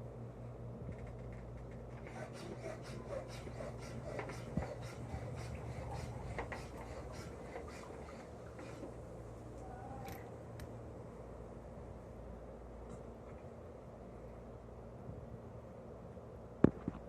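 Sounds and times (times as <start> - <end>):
steady low hum: 0.0 - 17.0
rubbing or scrubbing strokes: 2.0 - 9.0.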